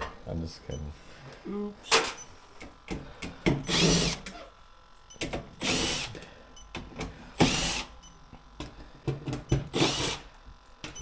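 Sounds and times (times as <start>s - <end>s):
drill-driver spinning out screws: 3.6s - 4.4s, 5.6s - 6.2s, 9.7s - 10.3s.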